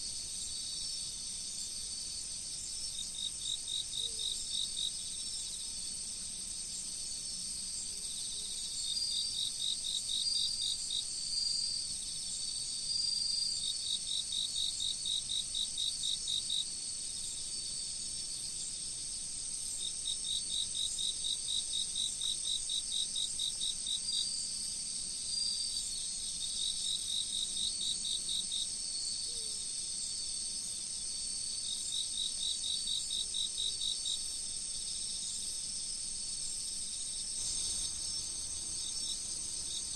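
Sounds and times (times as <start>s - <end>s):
cricket chirps: 0.0s - 39.9s
crickets trilling: 31.0s - 39.9s.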